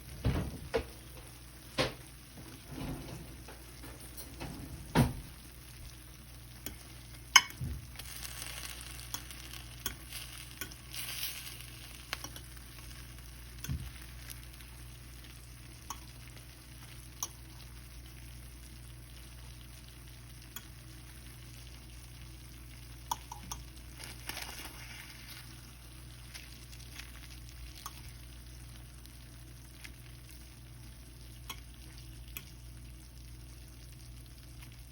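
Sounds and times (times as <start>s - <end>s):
soft hissing: 24.2s - 26.9s.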